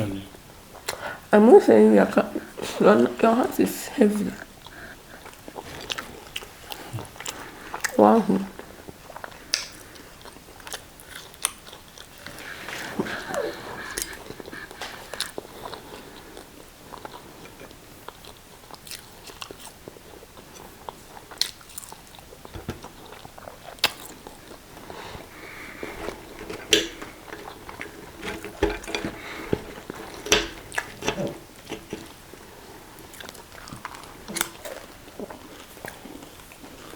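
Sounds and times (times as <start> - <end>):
people chewing food: 0.3 - 1.3, 4.2 - 36.9
wet clicks and smacks: 9.5 - 9.8, 23.7 - 24.2.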